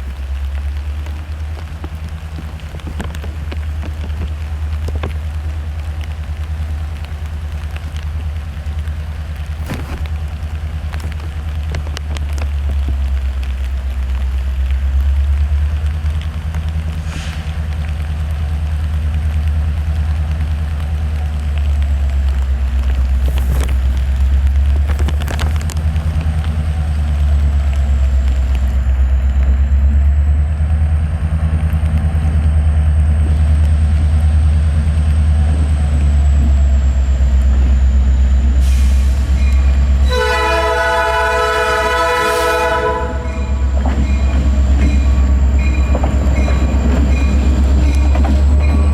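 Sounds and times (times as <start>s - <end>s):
diesel locomotives rumbling: 0.0s - 48.9s
train horn blast: 39.2s - 43.8s.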